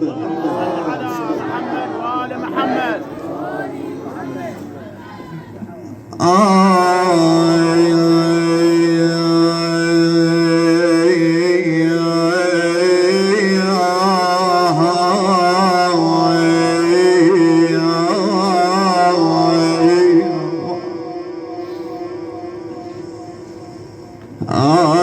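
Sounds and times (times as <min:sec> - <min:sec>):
sustained drone: 0:05.8 - 0:25.0.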